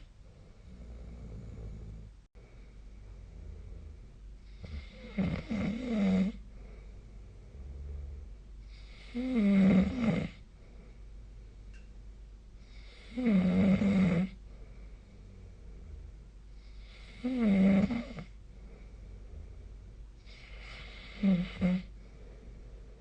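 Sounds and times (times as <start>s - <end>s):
person snoring: 3.3s - 6.4s, 7.6s - 10.4s, 12.7s - 14.4s, 16.8s - 18.3s, 20.3s - 21.9s.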